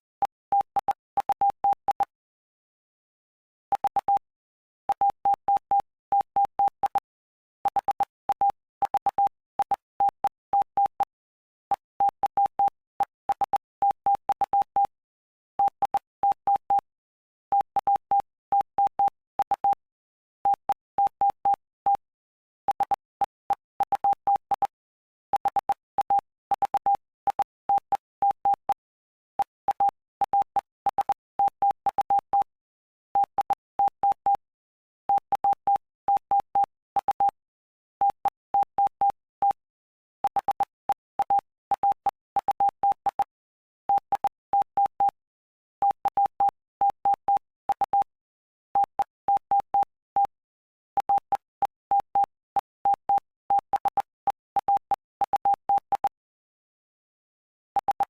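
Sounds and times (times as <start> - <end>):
morse code beeps: 3.7 - 4.2, 7.7 - 14.9, 22.7 - 32.5, 33.2 - 34.4, 35.1 - 37.4, 38.0 - 39.6, 40.2 - 45.2, 45.8 - 48.1, 48.8 - 50.4, 51.0 - 56.2, 57.8 - 58.0.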